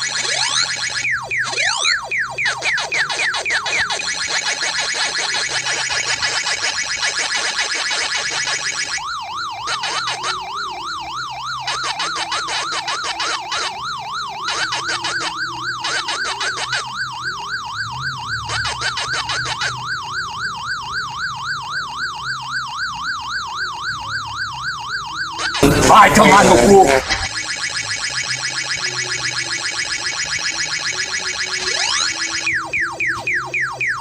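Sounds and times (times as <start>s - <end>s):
electronic warbling siren: 0.0s - 34.0s
harsh dense buzzing: 25.5s - 27.4s.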